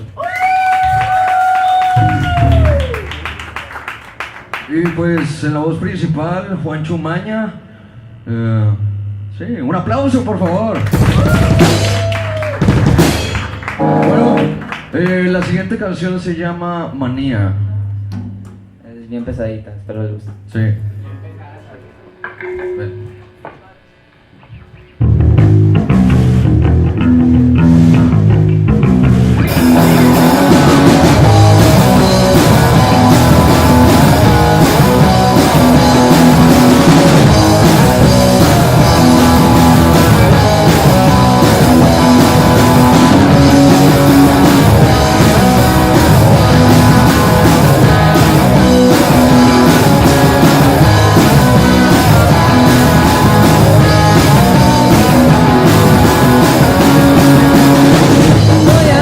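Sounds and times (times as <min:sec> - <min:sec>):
rock band playing: 0:10.1 - 0:15.6, 0:24.5 - 0:59.0.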